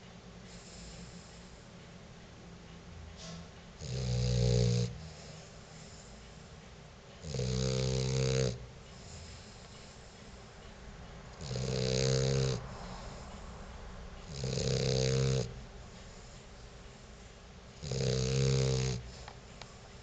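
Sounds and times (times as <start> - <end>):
quiet breathing: 0.0 - 2.0, 4.9 - 6.7, 8.3 - 20.0
pet snoring: 3.2 - 6.2, 7.2 - 10.4, 11.4 - 13.5, 14.2 - 16.4, 17.8 - 19.4.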